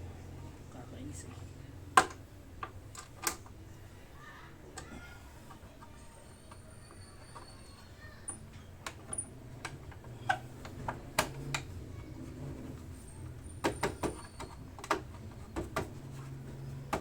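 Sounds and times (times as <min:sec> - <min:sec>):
plastic parts clicking and knocking: 0:01.9 - 0:03.6, 0:08.3 - 0:11.8, 0:13.6 - 0:16.0, 0:16.7 - 0:17.0.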